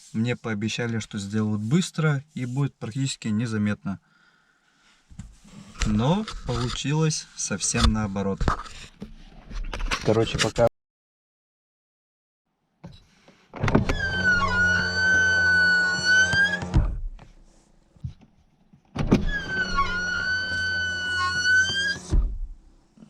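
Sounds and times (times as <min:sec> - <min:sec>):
window glass squealing: 0:13.7 - 0:17.0, 0:19.0 - 0:22.4
power window motor hum: 0:13.7 - 0:17.1, 0:19.2 - 0:22.5
window stopping thump: 0:19.0 - 0:22.6.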